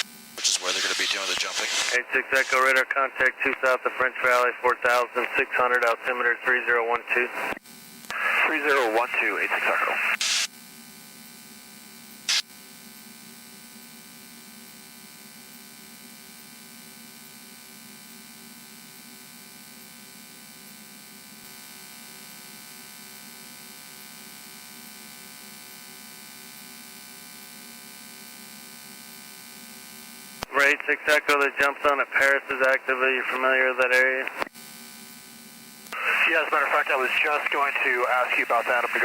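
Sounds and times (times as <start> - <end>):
brief burst of noise: 0.0 - 2.5.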